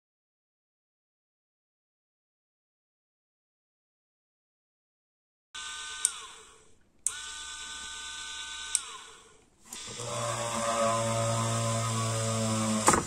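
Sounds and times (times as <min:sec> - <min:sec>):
drill motor whining: 0:05.6 - 0:13.0
drill switch click: 0:06.0 - 0:06.3.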